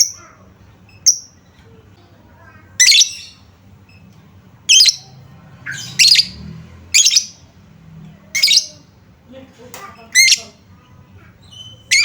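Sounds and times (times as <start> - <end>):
lovebird shrill calls: 5.7 - 6.4, 7.0 - 7.3.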